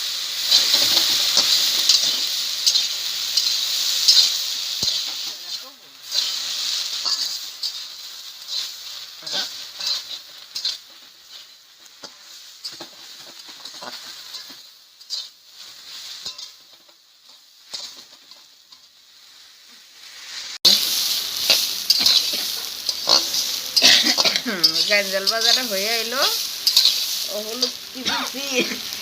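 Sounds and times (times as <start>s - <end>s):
food sizzling in oil: 0.0s - 29.0s
spatula scraping a pan: 0.4s - 18.9s, 20.1s - 29.0s.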